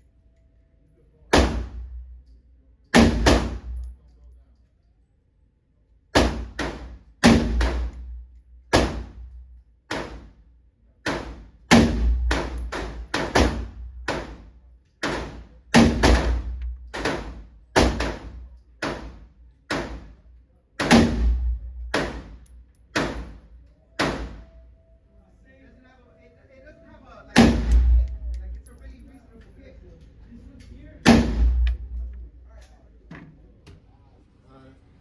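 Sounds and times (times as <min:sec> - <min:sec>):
gunshots with echo: 0:03.0 - 0:03.8, 0:15.0 - 0:20.1, 0:20.8 - 0:22.4, 0:27.4 - 0:28.4, 0:31.0 - 0:32.1.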